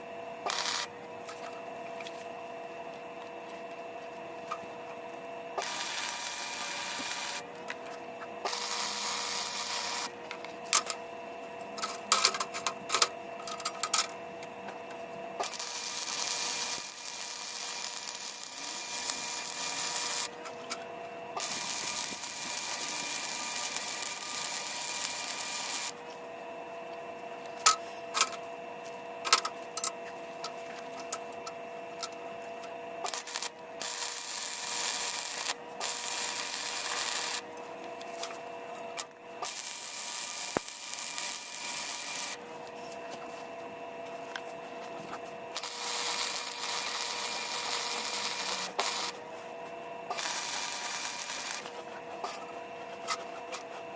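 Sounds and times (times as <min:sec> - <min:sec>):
steady machine hum: 0:00.0 - 0:53.9
welder hissing: 0:00.5 - 0:00.9, 0:05.6 - 0:07.4, 0:15.4 - 0:20.3, 0:21.4 - 0:25.9, 0:33.1 - 0:37.4, 0:39.4 - 0:42.4, 0:45.6 - 0:49.2, 0:50.1 - 0:51.8.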